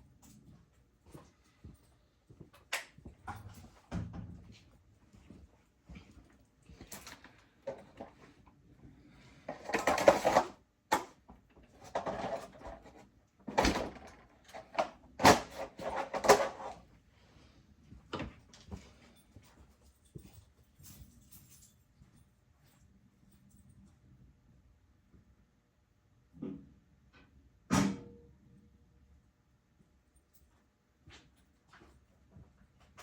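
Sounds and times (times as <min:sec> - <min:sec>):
hard objects clattering: 0:09.5 - 0:11.1.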